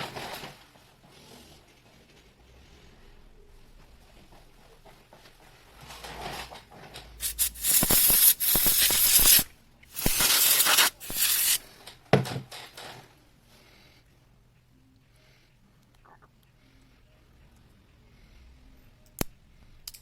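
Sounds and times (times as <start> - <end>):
close rubbing and scraping: 5.8 - 11.7.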